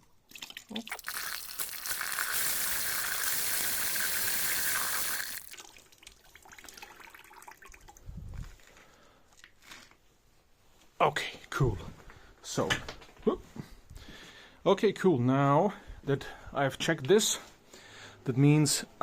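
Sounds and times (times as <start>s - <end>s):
pressurised water hissing from valve: 0.9s - 5.6s.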